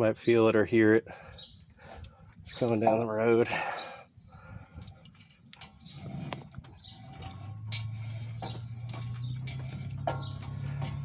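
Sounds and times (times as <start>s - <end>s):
birds calling: 1.1s - 2.8s, 3.5s - 11.0s
low steady wheel rumble: 4.4s - 11.0s
wheel hub clicking: 5.2s - 11.0s.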